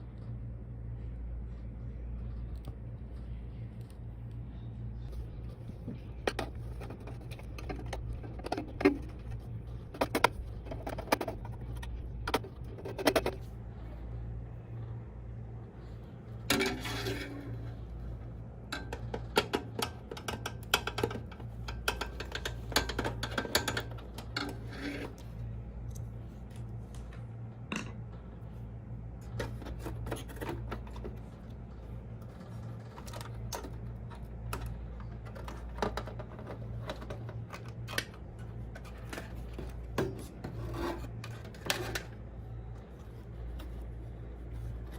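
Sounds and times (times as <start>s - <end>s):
steady low hum: 0.0s - 44.9s
computer parts clicking and clattering: 5.9s - 13.5s, 18.7s - 25.1s, 29.3s - 42.2s.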